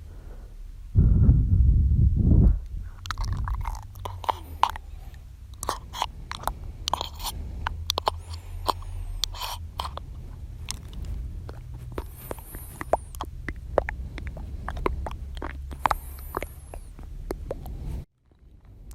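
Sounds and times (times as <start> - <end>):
wet tongue and lip clicks: 2.6 - 18.9.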